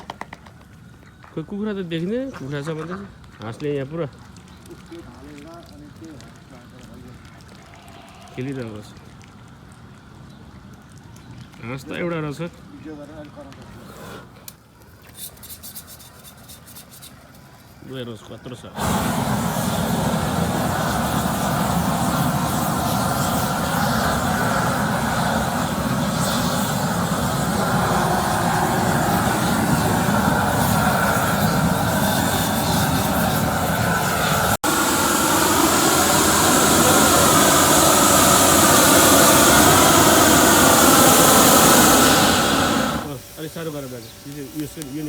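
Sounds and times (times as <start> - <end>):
gas torch flame roaring: 13.6 - 14.6, 18.7 - 45.0.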